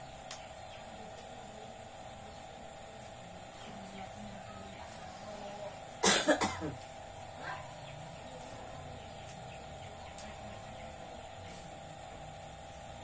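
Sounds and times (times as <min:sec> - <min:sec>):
woman coughing: 0:06.0 - 0:06.8.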